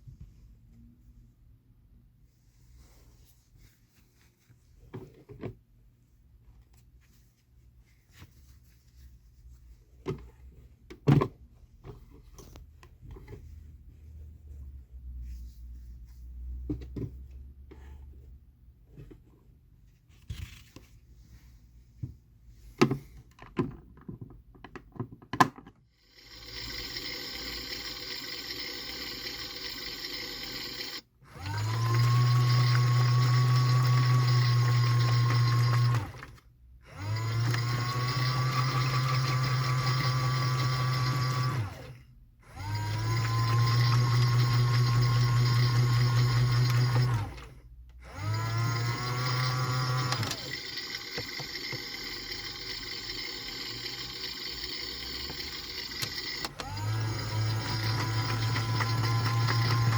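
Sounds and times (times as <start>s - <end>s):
washing machine motor whine and hum: 36.8s - 59.9s.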